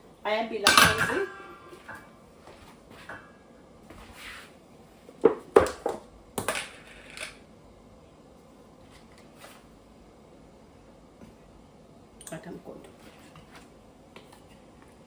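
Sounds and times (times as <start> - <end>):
kitchenware clattering against pot: 0.6 - 2.1.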